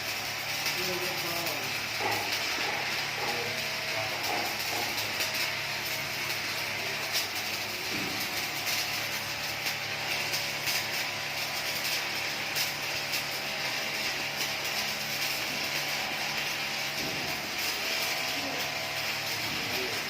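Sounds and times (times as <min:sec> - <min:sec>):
arc welding hiss and crackle: 0:00.0 - 0:20.0
welding machine mains hum: 0:00.0 - 0:20.0.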